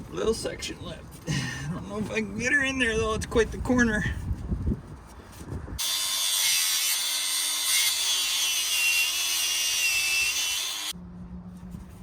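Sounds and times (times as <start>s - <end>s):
angle grinder cutting steel: 5.8s - 10.9s.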